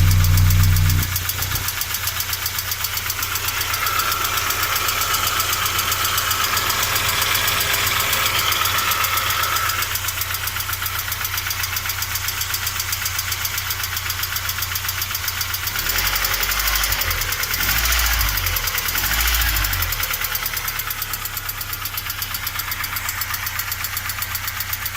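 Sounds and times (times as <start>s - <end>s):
dull quiet engine knock: 0.0s - 1.8s
engine running: 0.0s - 24.9s
fast bright engine ticking: 0.0s - 24.9s.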